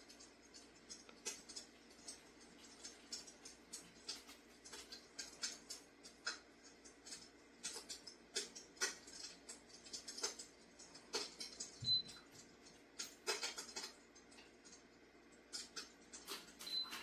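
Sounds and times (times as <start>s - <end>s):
simulated fire crackling: 0.0s - 16.9s.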